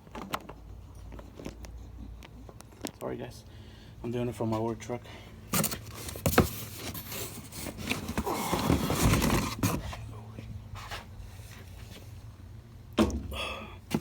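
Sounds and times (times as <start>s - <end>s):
cardboard rustling and scraping: 5.5s - 12.2s.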